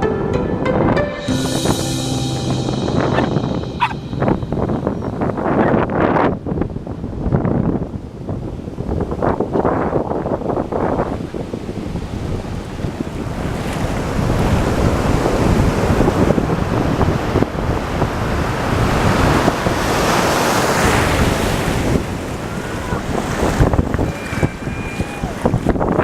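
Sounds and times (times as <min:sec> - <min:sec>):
wind buffeting microphone: 0:03.1 - 0:26.0
surf washing onto beach: 0:11.3 - 0:26.0.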